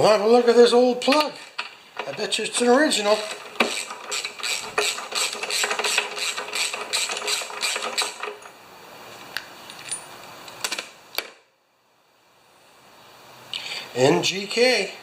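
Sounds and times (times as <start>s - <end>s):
ratchet wrench clicking: 2.9s - 8.4s.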